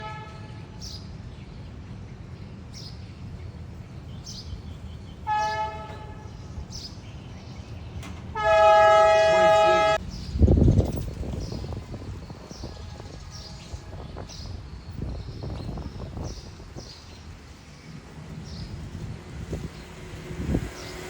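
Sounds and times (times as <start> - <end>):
horn blasts: 5.3 - 6.3, 8.3 - 10.0.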